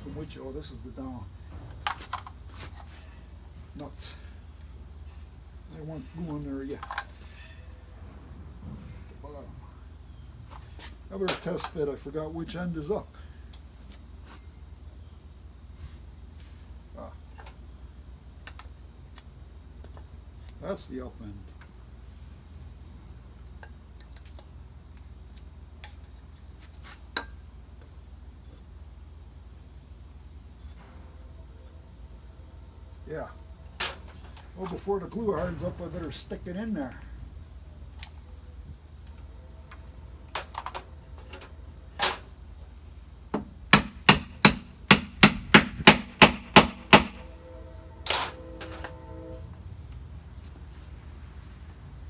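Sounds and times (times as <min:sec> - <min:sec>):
crickets chirring: 0:00.0 - 0:52.0
low background hum: 0:00.0 - 0:52.0
sharp knock: 0:43.4 - 0:47.3.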